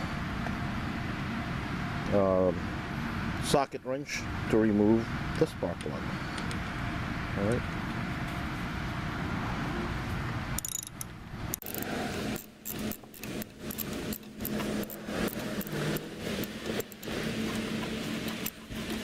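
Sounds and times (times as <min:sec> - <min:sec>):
metal clinking: 0:10.6 - 0:17.0
ratchet wrench clicking: 0:10.6 - 0:17.6, 0:18.2 - 0:19.0.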